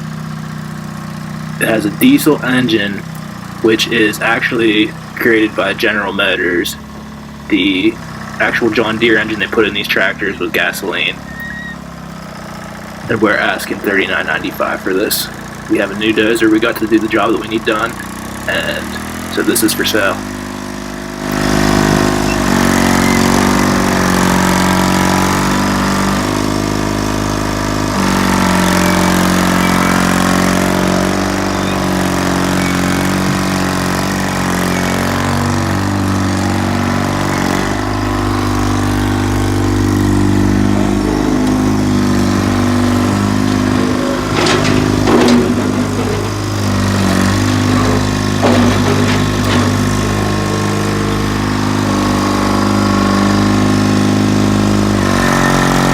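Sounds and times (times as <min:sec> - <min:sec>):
crawler diesel engine running: 0:00.0 - 0:55.9
metallic clanks: 0:21.2 - 0:55.9.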